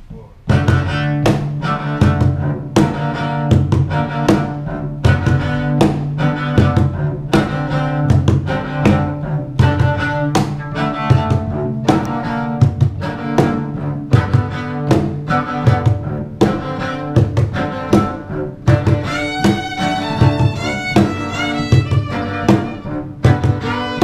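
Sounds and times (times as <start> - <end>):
low bowed strings: 0.0 - 24.0
steady beat: 0.0 - 24.0
high sliding string line: 0.9 - 24.0.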